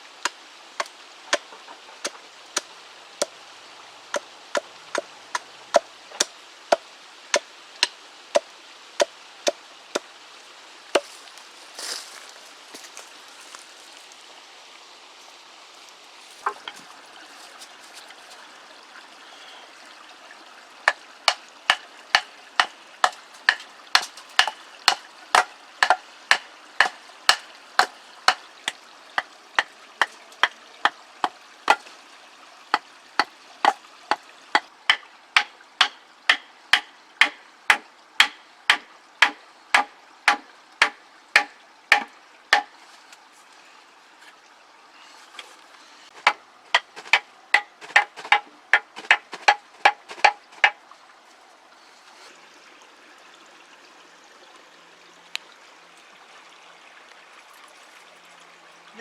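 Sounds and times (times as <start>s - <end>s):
tool striking wood: 21.7s - 28.4s, 34.9s - 42.7s, 46.2s - 50.8s.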